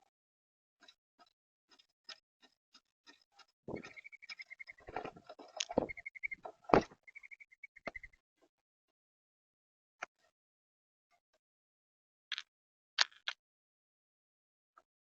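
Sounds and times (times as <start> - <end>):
rapid trilled bird call: 3.1 - 4.9, 5.7 - 8.1
birds pecking at feeder: 3.7 - 7.3.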